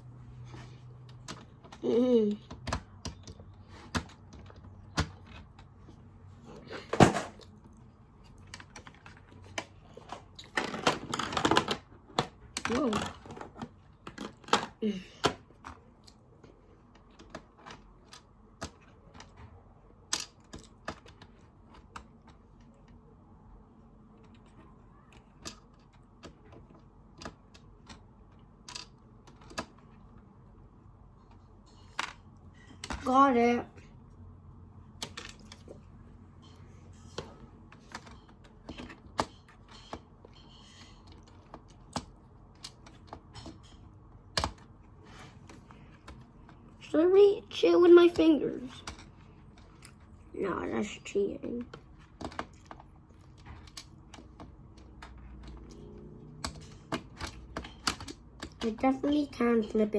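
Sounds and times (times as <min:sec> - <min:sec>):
toy pieces clicking and tapping: 0:20.1 - 0:23.0, 0:24.2 - 0:29.8, 0:51.6 - 0:59.9.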